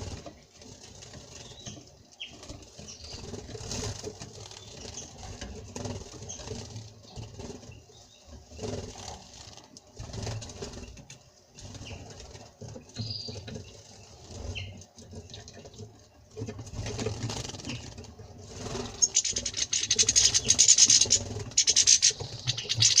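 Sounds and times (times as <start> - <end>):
small birds splashing in water: 18.8 - 23.0.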